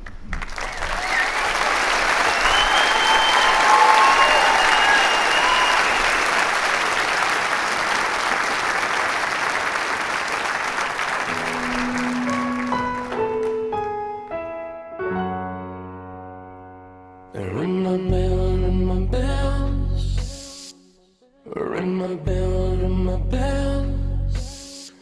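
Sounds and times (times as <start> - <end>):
audience applauding: 0.0 - 14.2
piano notes and chords: 11.2 - 17.4.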